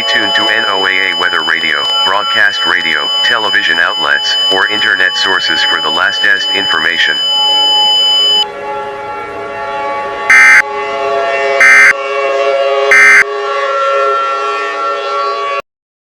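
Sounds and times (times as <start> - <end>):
digital data tones: 0.0 - 8.4, 10.3 - 10.6, 11.6 - 11.9, 12.9 - 13.2
siren-like droning tones: 0.0 - 15.6.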